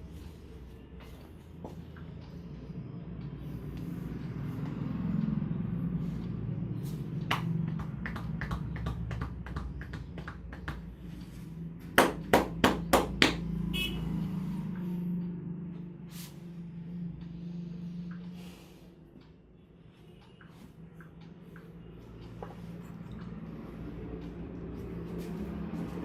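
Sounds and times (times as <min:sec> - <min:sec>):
sharp percussive slaps: 0:07.2 - 0:11.0, 0:11.9 - 0:13.6
hands tapping and rubbing head: 0:07.2 - 0:11.1, 0:12.0 - 0:13.4.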